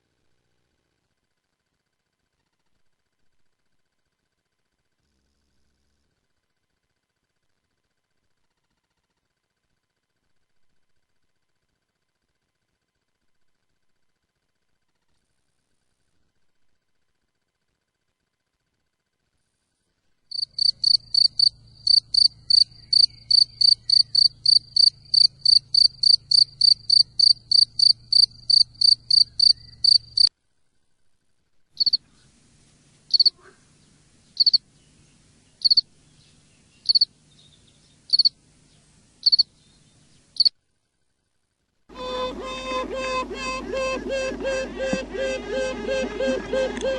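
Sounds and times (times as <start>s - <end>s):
cricket chirping: 20.3s - 30.3s, 31.8s - 32.1s, 33.1s - 33.4s, 34.4s - 34.7s, 35.6s - 35.9s, 36.8s - 37.1s, 38.0s - 38.4s, 39.2s - 39.6s, 40.3s - 40.5s
music: 41.9s - 46.9s.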